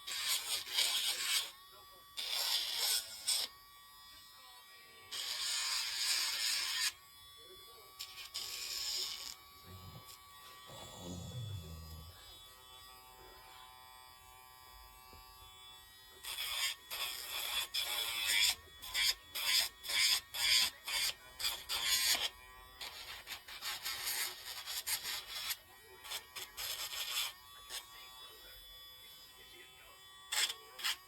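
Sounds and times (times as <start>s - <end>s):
rasping grinding on dog nails: 0.0s - 1.6s, 2.2s - 3.5s, 5.1s - 7.0s, 8.0s - 12.2s, 16.2s - 27.8s, 30.3s - 31.0s
nail grinder humming: 8.0s - 12.4s, 16.2s - 25.5s.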